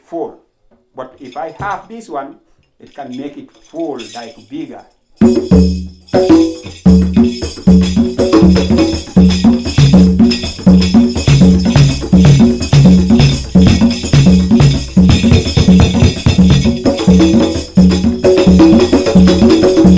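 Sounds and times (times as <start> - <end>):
fast percussive instrumental music: 5.2 - 19.9.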